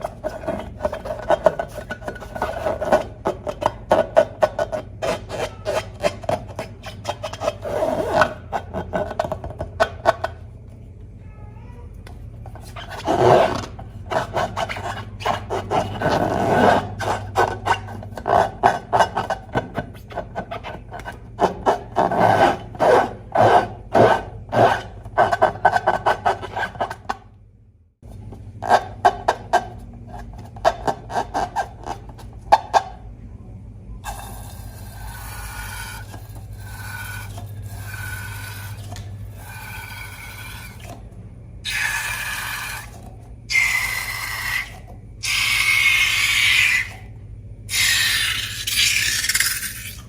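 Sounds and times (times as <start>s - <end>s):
rubber balloon squeaking: 0.0s - 10.2s, 12.4s - 27.2s.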